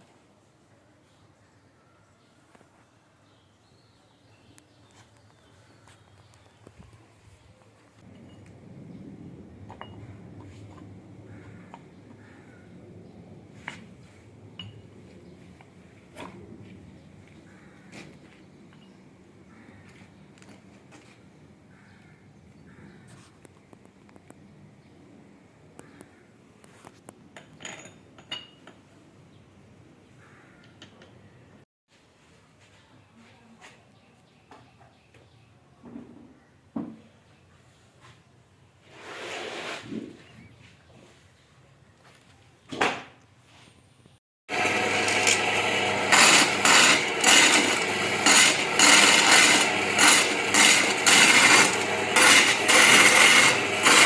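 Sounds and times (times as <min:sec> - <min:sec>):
wood lathe scraping wood: 0:44.5 - 0:54.0.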